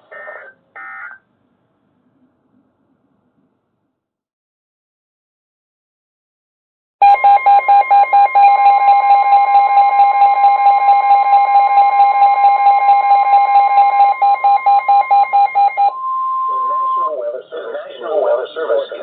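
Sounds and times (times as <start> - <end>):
rapid alarm beeping: 7.0 - 17.3
steady alarm tone: 7.0 - 17.4.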